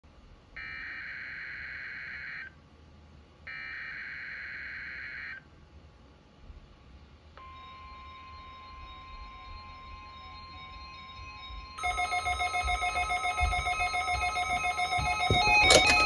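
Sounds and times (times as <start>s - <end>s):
steady warning tone: 7.4s - 16.0s
warbling digital data bursts: 7.5s - 15.3s.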